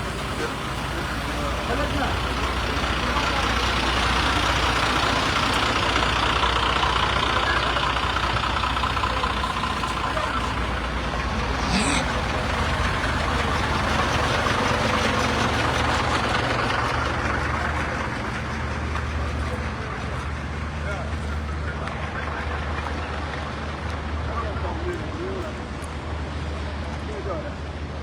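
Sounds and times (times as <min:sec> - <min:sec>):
vehicle engines running: 0:00.0 - 0:28.0
background voices: 0:00.1 - 0:13.6.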